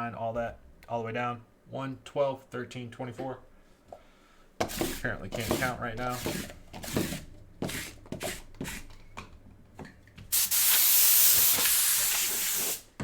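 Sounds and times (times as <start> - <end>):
loud steady hiss: 10.3 - 13.0.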